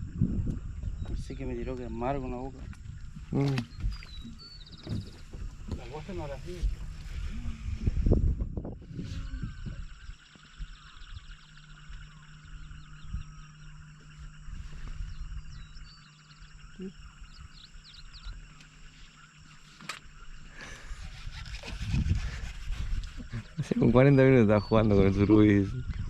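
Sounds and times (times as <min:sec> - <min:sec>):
low rumble: 0:00.0 - 0:18.5
faint low hum: 0:00.0 - 0:26.0.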